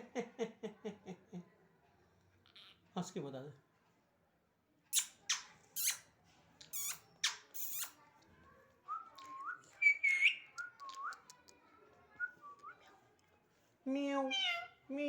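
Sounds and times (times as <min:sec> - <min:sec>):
parrot screeching: 0:05.8 - 0:06.0, 0:14.4 - 0:14.8
parrot whistling: 0:09.8 - 0:11.2.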